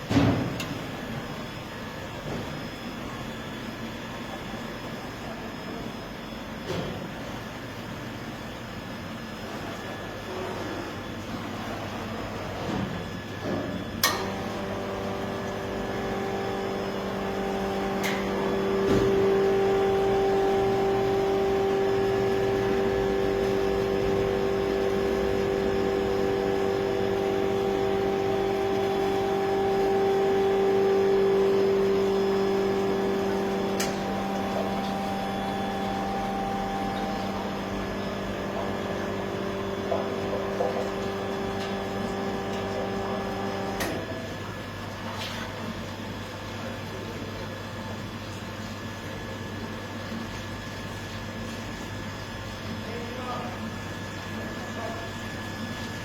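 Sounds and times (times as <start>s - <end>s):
keg washer machine hum: 0.0s - 56.0s.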